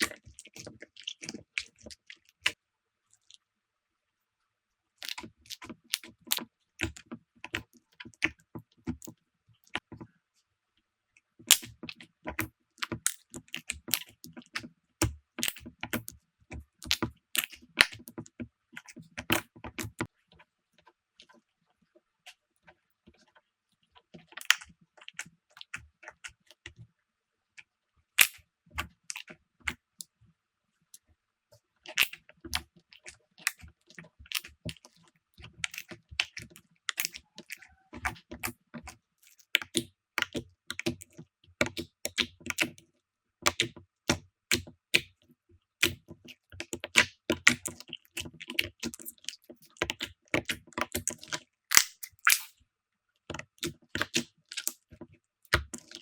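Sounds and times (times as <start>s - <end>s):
slime clicking and popping: 28.2s - 29.8s, 31.9s - 32.6s, 34.3s - 34.8s, 35.6s - 38.9s, 39.6s - 42.8s, 43.4s - 45.1s, 45.8s - 52.6s, 53.4s - 54.8s, 55.5s - 56.0s.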